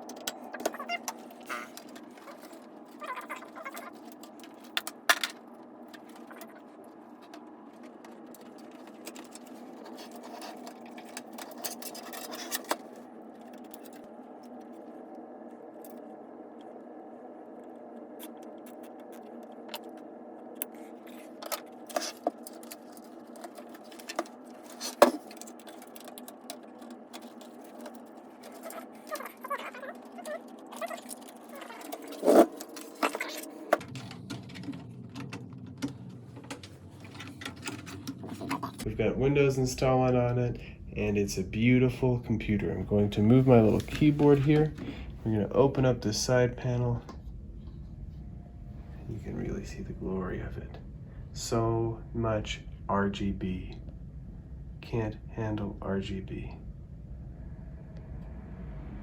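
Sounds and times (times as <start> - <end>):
computer parts clicking and rattling: 0.0 - 15.0, 17.6 - 38.9
steady hum: 0.0 - 59.0.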